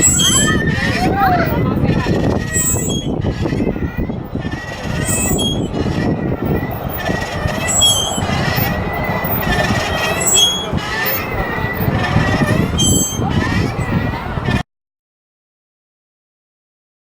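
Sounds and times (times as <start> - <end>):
wagon wheels rumbling: 0.0 - 14.6
wagon wheels squeaking: 0.0 - 14.6.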